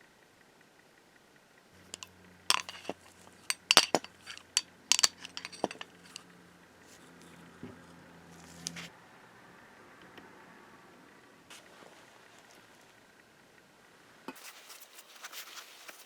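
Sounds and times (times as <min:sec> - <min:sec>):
small metal parts clinking: 0:01.8 - 0:06.3.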